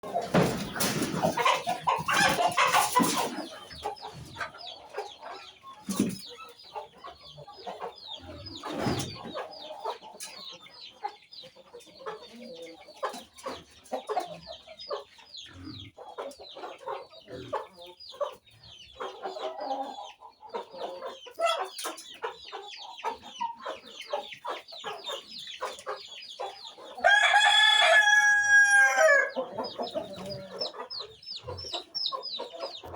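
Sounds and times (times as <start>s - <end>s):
chickens clucking and cheeping: 0.0s - 32.9s
rooster crowing: 27.0s - 29.4s.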